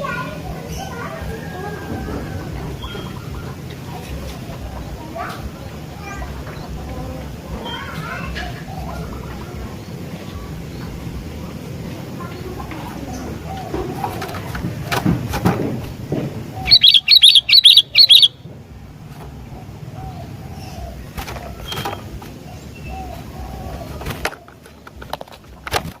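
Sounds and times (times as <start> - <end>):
faint low bird calls: 0.0 - 18.5, 19.2 - 26.0
bulbul sharp chirps: 16.7 - 18.4.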